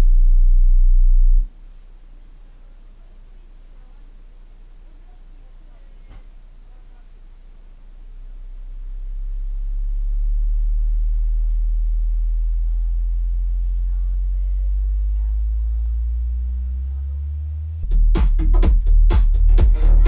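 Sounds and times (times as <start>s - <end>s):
low bass sine tone rising: 0.0s - 1.5s, 7.9s - 20.0s.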